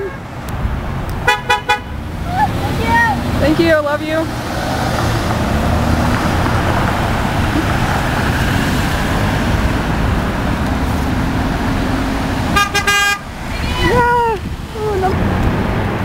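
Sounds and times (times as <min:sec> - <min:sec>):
road traffic rumble: 0:00.0 - 0:16.0
car horn: 0:01.2 - 0:02.0, 0:12.5 - 0:13.9.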